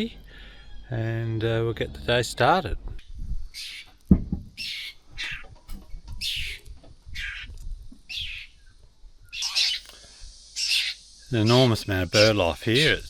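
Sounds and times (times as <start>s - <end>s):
birds harsh calls: 3.0s - 13.0s
low thump: 4.1s - 4.6s.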